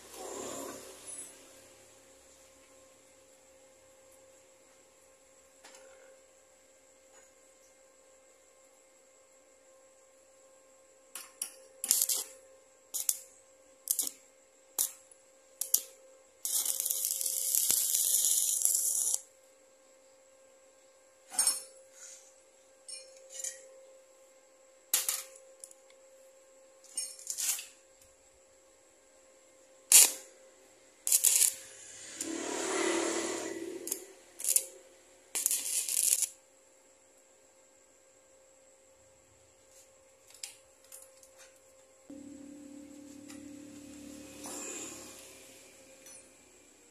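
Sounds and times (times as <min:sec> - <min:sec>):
hiss: 0:00.0 - 0:01.6, 0:15.6 - 0:19.2, 0:31.1 - 0:34.8, 0:43.8 - 0:46.0
faint steady hum: 0:00.0 - 0:32.3, 0:33.2 - 0:46.9.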